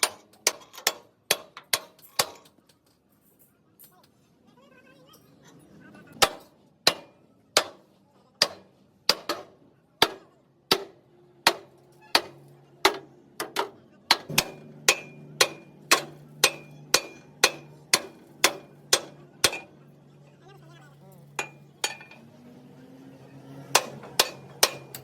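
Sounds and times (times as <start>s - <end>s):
hammer striking steel: 0.0s - 2.5s, 6.2s - 19.8s, 21.4s - 22.3s, 23.7s - 25.0s.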